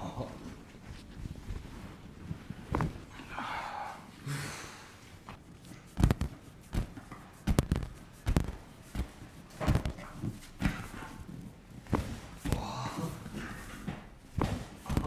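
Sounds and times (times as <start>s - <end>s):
sharp knocks on a body: 2.7s - 3.1s, 6.0s - 11.2s, 11.8s - 15.0s.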